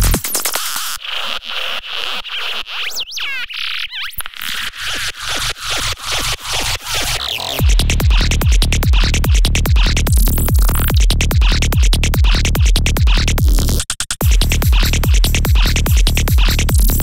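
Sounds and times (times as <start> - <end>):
four-on-the-floor kick drum: 7.6 - 17.0.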